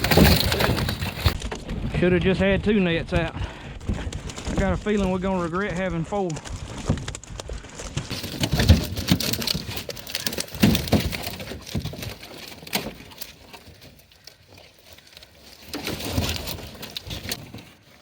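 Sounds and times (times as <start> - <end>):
fish flopping and splashing: 6.4 - 18.0.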